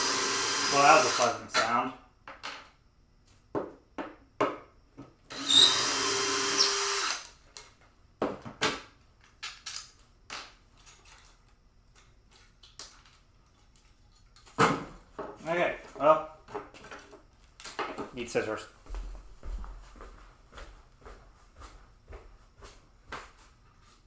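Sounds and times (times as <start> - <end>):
power drill running: 0.0 - 1.4, 5.3 - 7.3
clicks and knocks of parts: 9.2 - 14.6.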